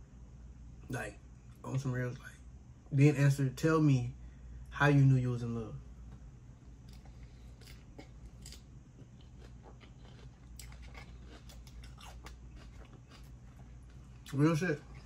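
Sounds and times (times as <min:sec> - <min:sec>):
low steady hum: 0:00.0 - 0:15.0
person chewing crunchy snack: 0:06.9 - 0:15.0.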